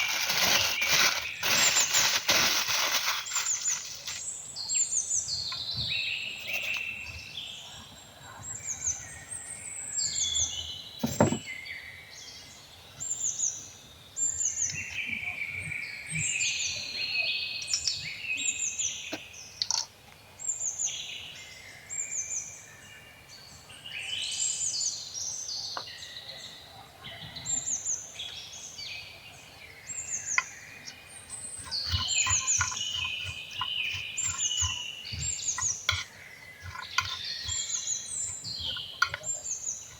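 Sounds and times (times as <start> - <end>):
birds chirping and singing: 0.0 - 39.9
soft knocks and thump: 11.0 - 11.5.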